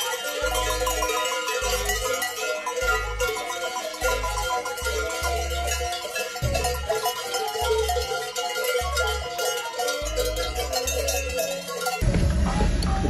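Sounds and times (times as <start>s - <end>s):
bell-like notes: 0.0s - 13.0s
pulsing low bass note: 12.0s - 13.0s.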